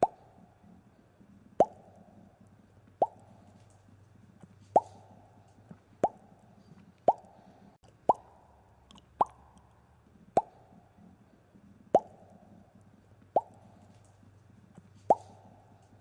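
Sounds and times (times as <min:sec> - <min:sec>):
bubbles popping: 0:08.9 - 0:09.5, 0:12.0 - 0:12.2.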